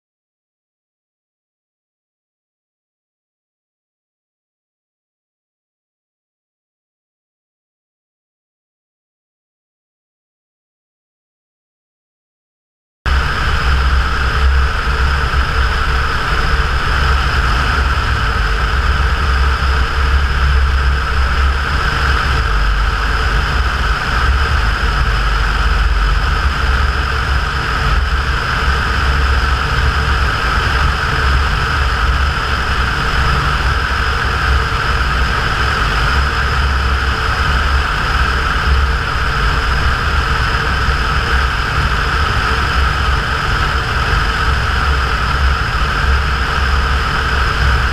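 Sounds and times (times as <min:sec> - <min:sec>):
propeller plane engine droning: 0:13.1 - 0:47.9.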